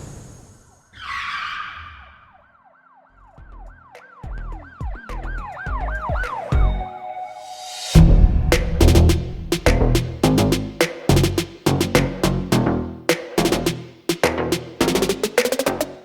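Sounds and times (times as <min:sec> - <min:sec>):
siren yelping: 0:01.0 - 0:07.4
whoosh: 0:07.4 - 0:10.5
deep bass hits: 0:08.0 - 0:12.7.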